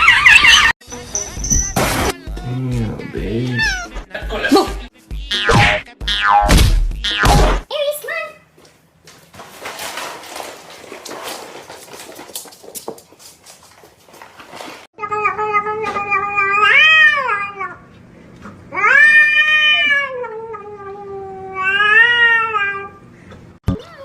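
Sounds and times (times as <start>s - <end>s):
cat yowling: 3.5s - 4.0s, 15.2s - 17.8s, 18.7s - 23.0s
rustling crackling noise: 8.6s - 14.9s.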